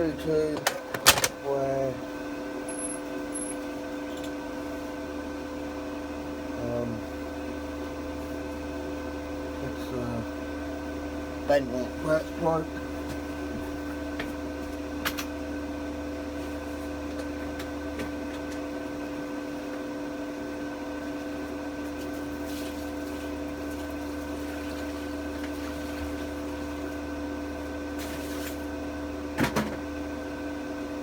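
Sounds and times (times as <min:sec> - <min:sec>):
welder humming: 0:00.0 - 0:04.9.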